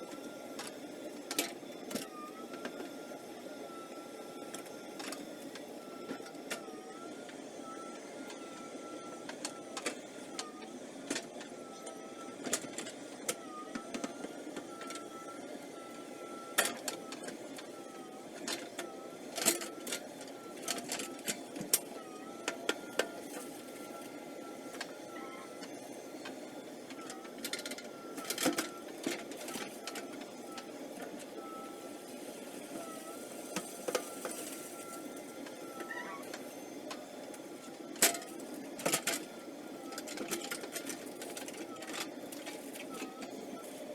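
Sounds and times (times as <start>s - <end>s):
hydraulic whine: 32.7s - 36.9s.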